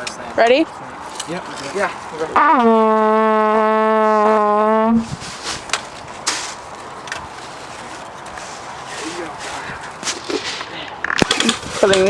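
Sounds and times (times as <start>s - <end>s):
outdoor movement: 0.0s - 12.0s.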